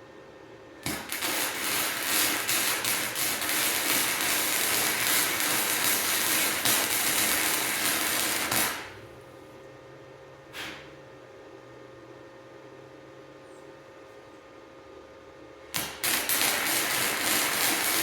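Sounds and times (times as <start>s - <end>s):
welding arc crackling: 0.8s - 9.0s, 15.7s - 18.0s.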